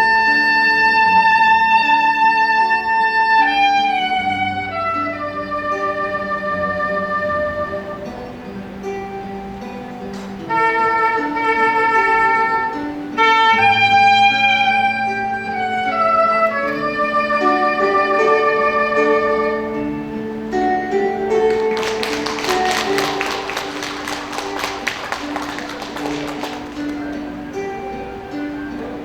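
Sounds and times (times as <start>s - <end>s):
soprano saxophone melody: 0.0s - 9.4s, 10.4s - 29.0s
audience applause: 21.4s - 27.2s.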